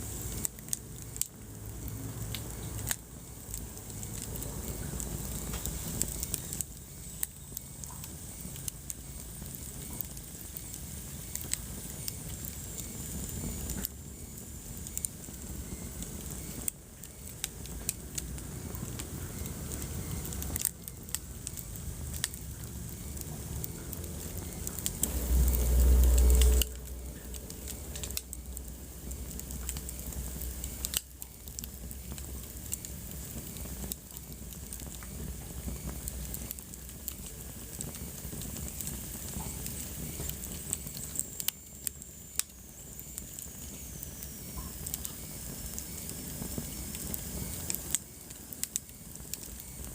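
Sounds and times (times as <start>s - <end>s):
wood fire crackling and popping: 0.0s - 49.9s
low rumble: 22.0s - 32.6s.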